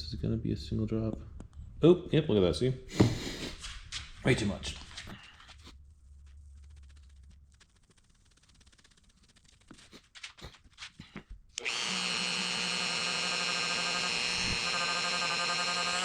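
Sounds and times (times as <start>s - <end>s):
rotary tool whining: 10.4s - 16.0s.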